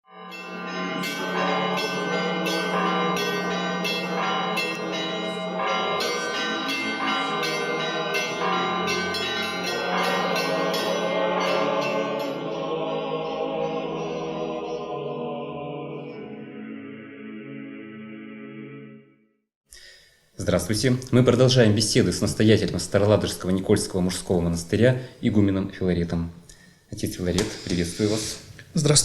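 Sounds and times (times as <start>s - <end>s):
church bells ringing: 0.1s - 15.3s.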